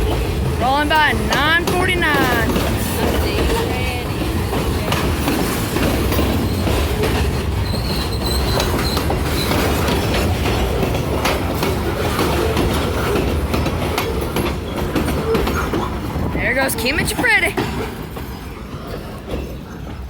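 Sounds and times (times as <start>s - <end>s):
train cars rumbling past: 0.0s - 20.0s
wheels clicking over rail joints: 0.0s - 20.0s
faint high wheel squeal: 7.6s - 9.9s.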